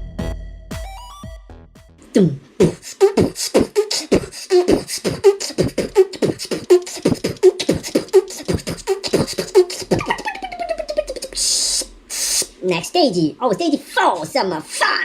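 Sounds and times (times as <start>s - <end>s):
vocal boom beats: 0.0s - 12.5s
beatboxing: 2.0s - 12.6s.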